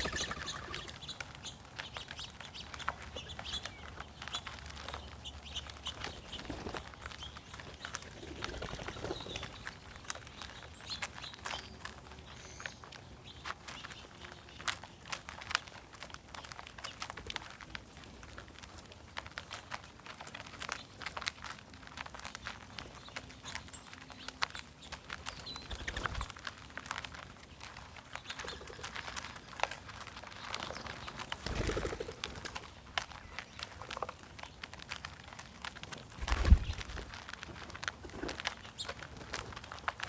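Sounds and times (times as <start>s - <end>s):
doves cooing: 0.0s - 1.1s, 28.3s - 29.4s.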